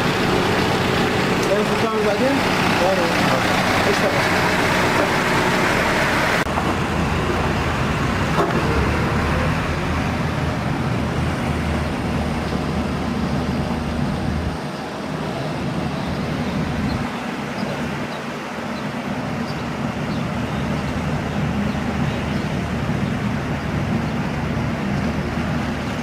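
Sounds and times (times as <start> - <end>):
excavator diesel engine humming: 0.0 - 26.0.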